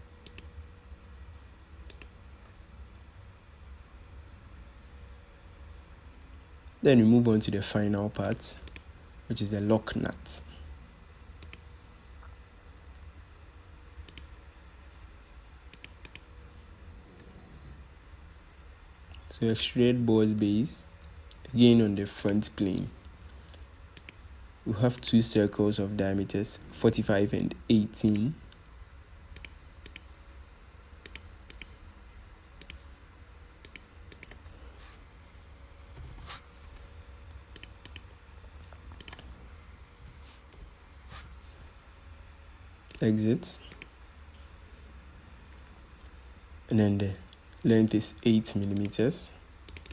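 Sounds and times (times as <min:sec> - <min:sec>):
faint high whine: 0:00.0 - 0:49.9
low steady hum: 0:00.0 - 0:49.9
computer mouse double-clicks: 0:14.0 - 0:14.3, 0:15.7 - 0:16.2, 0:29.3 - 0:30.1, 0:32.6 - 0:32.8, 0:33.6 - 0:34.4, 0:39.0 - 0:39.2
mouse and keyboard clicks: 0:39.0 - 0:39.3, 0:49.7 - 0:49.9.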